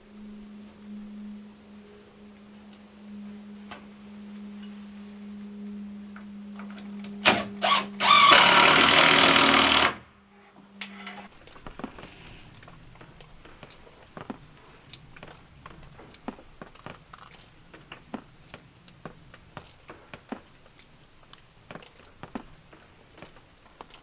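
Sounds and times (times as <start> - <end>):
steady low hum: 0.0 - 22.3
power tool running in bursts: 7.2 - 10.1.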